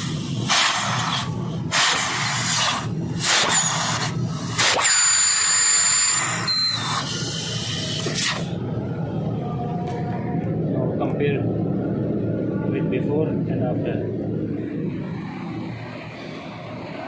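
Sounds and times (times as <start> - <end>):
compressed gas hissing blasts: 0.0 - 6.1
high whistle: 4.7 - 7.1.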